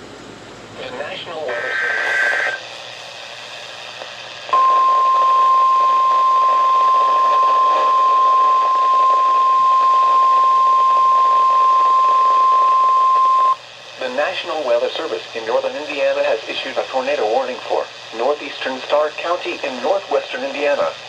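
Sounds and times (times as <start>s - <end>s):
radio hiss: 0.7s - 21.0s
high steady alarm tone: 4.6s - 13.6s.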